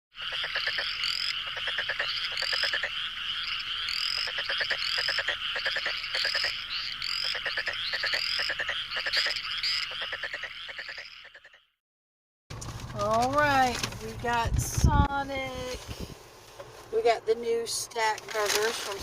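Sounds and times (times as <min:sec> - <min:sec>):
frogs rising chirps: 0:00.1 - 0:11.8
frogs trilling: 0:00.1 - 0:11.8.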